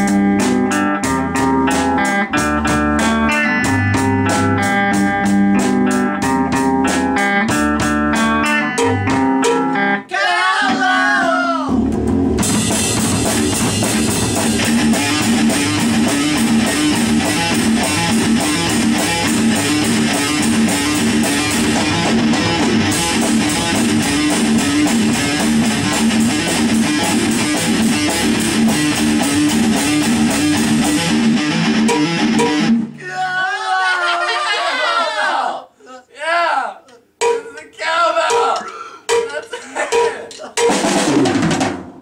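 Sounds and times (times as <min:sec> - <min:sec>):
bass and drums: 0:00.0 - 0:09.9, 0:11.6 - 0:33.0, 0:39.1 - 0:42.0
strummed guitar: 0:00.0 - 0:10.0, 0:11.7 - 0:33.0.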